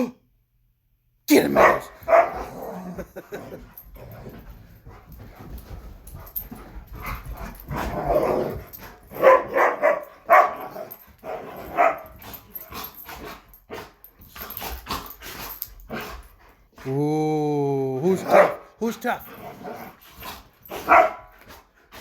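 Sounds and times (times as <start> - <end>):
puppies scuffling: 3.1 - 9.3.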